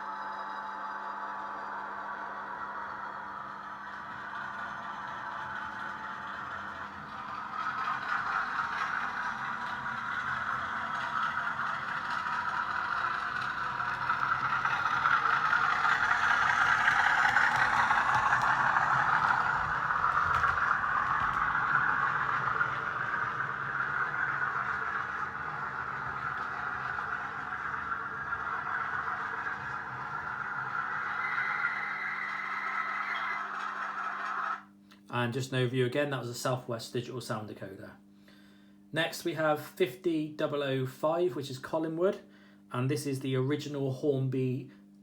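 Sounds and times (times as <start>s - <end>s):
model locomotive diesel engine sound: 0.0s - 34.6s
wheels rattling on track: 2.8s - 34.6s.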